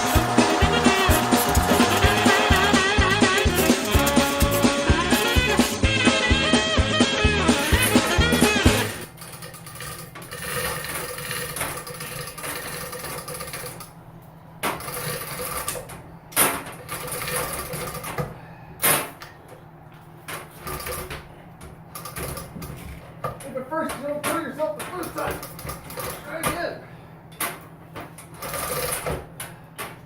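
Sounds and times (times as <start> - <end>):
low machine hum: 0.0 - 30.0.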